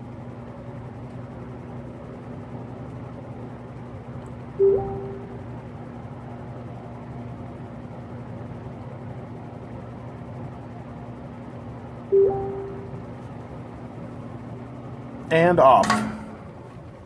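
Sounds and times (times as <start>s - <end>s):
box fan motor hum: 0.0s - 17.0s
loud short ringing tone: 4.6s - 5.4s, 12.2s - 13.0s.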